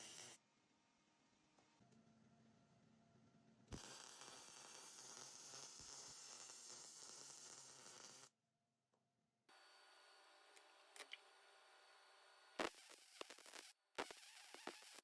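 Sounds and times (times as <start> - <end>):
welding arc hissing and crackling: 0.0 - 0.4, 3.7 - 8.3, 12.6 - 15.0.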